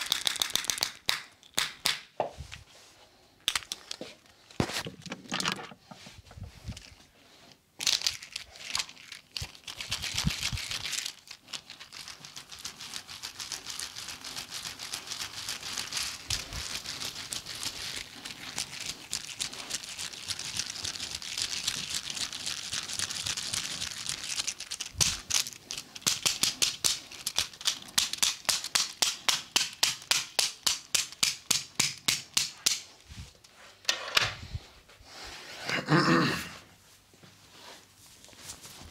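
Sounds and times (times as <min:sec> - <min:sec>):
hands rubbing skin: 0:08.7 - 0:31.5
rhythmic massage slaps: 0:23.6 - 0:32.9.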